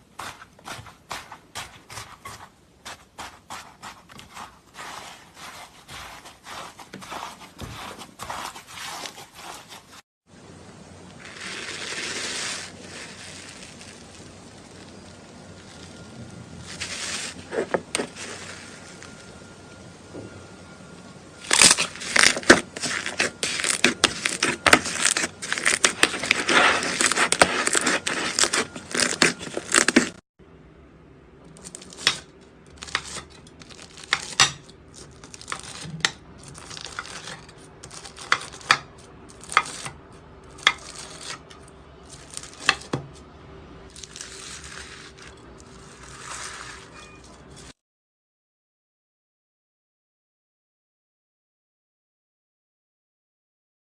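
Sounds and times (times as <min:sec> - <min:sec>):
soft crinkling: 0:00.0 - 0:10.0, 0:11.0 - 0:20.4, 0:21.4 - 0:30.2, 0:31.5 - 0:43.3, 0:43.9 - 0:47.8
crunchy slime crackling: 0:00.2 - 0:10.0, 0:11.0 - 0:19.4, 0:21.4 - 0:30.2, 0:31.5 - 0:43.3, 0:43.9 - 0:47.8.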